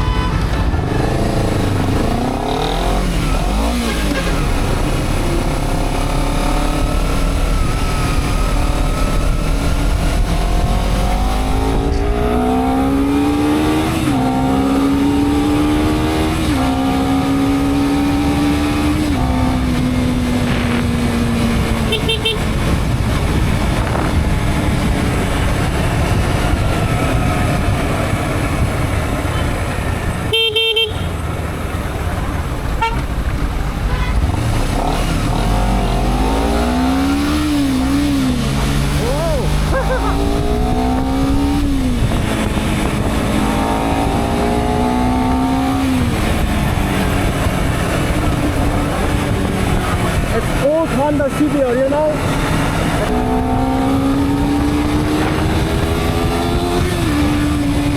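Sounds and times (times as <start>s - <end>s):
vehicle horn tooting: 0.0s - 0.6s, 3.7s - 4.6s, 21.8s - 22.5s, 30.3s - 31.2s, 32.8s - 33.1s, 33.8s - 34.4s
road traffic noise: 0.0s - 57.9s
motorcycle engine running: 14.3s - 57.9s.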